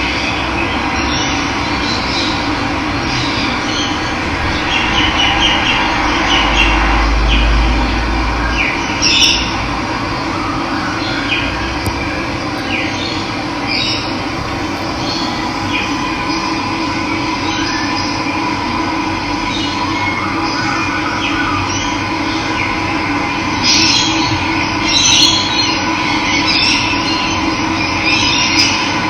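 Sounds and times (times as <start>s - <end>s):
low rumble: 1.6s - 10.6s, 11.4s - 19.5s
birds chirping: 11.0s - 18.2s.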